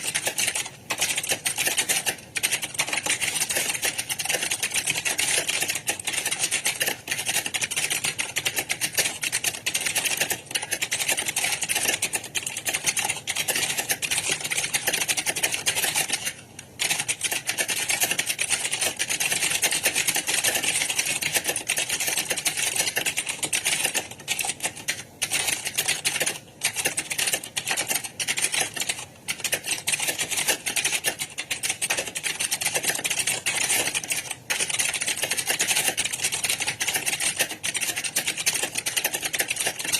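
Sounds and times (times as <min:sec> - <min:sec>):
computer keyboard typing fast: 0:00.0 - 0:39.9.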